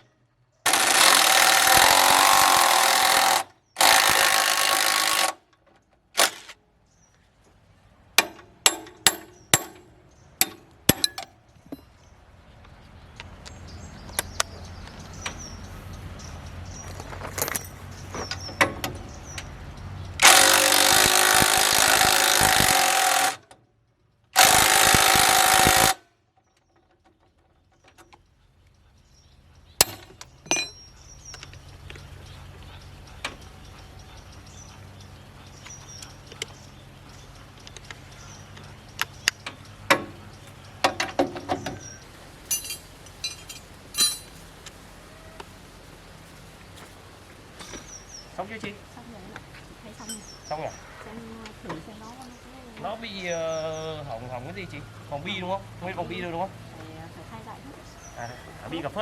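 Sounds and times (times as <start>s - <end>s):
power tool running: 0.7s - 5.4s, 20.2s - 23.4s, 24.4s - 26.0s.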